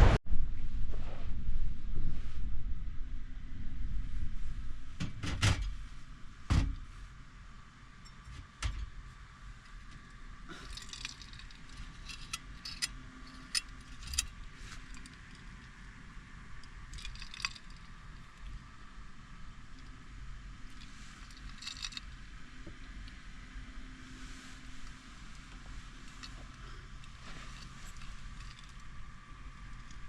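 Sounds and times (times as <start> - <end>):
light clicks and rattles: 8.0 - 15.9, 16.6 - 18.8, 19.7 - 23.3, 24.5 - 30.0.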